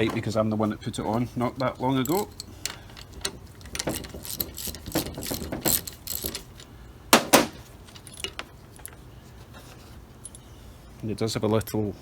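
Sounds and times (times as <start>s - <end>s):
metal tool clinking and rattling: 0.0s - 9.0s, 10.2s - 10.5s.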